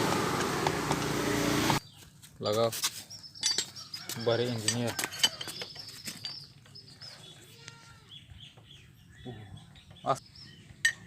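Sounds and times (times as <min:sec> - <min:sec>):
metal tools clicking and clinking: 0:03.4 - 0:06.8.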